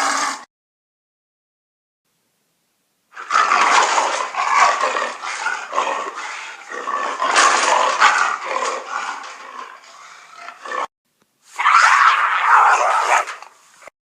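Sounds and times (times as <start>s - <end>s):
jaguar roaring and growling: 0.0s - 0.5s, 3.2s - 10.9s, 11.6s - 13.5s.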